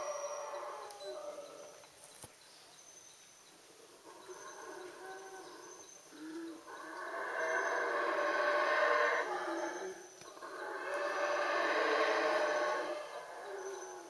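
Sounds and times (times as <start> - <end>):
howler monkeys roaring: 4.0 - 14.0.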